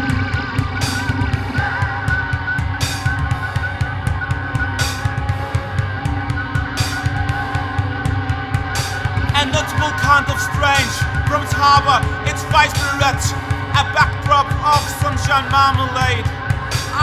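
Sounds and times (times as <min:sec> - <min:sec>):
rock band instrumental: 0:00.0 - 0:17.0.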